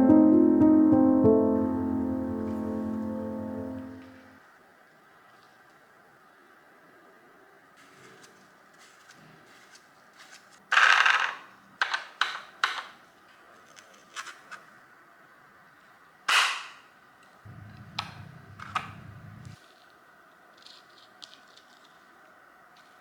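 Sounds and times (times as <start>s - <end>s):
low steady hum: 0.0s - 4.4s, 17.5s - 19.6s.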